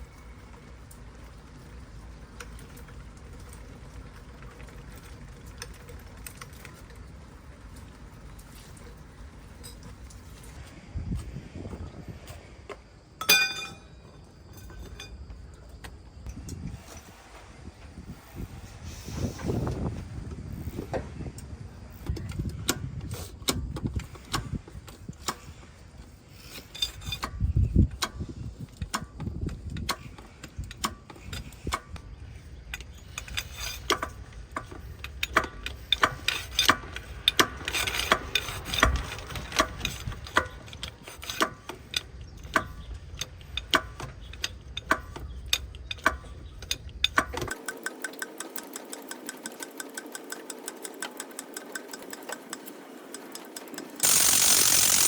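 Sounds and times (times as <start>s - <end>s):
sharp mechanical clicks and knocks: 20.9s - 25.7s, 26.5s - 32.1s, 32.7s - 55.0s
even run of ticks: 41.6s - 55.0s.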